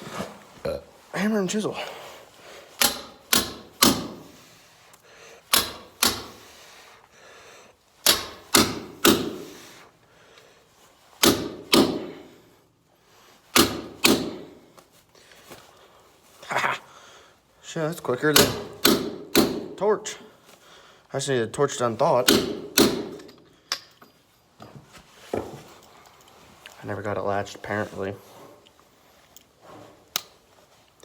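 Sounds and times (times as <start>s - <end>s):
hammer striking steel chisel: 2.8s - 4.4s, 5.5s - 6.5s, 8.0s - 9.6s, 11.2s - 12.3s, 13.6s - 14.6s, 18.3s - 19.8s, 22.2s - 24.0s.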